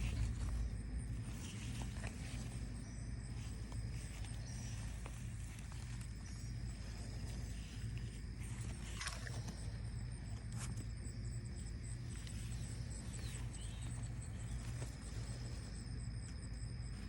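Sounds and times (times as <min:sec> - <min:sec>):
steady low hum: 0:00.0 - 0:17.0
faint bird chirps: 0:12.1 - 0:15.8.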